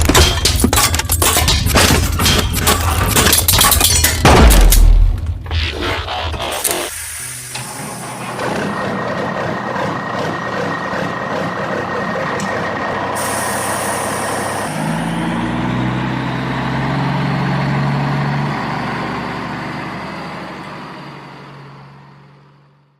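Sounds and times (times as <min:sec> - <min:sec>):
mechanical clanking and whirring: 0:00.0 - 0:14.9
deep truck engine running: 0:00.0 - 0:22.9.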